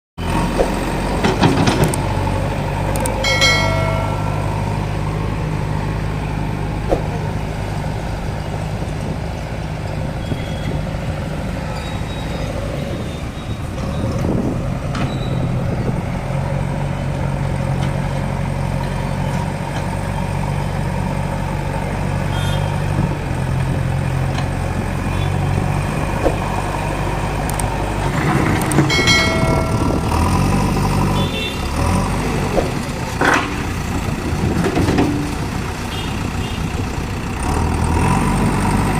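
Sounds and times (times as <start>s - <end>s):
diesel engine under load: 0.2s - 38.9s
brief high-pitched tone: 3.2s - 5.2s.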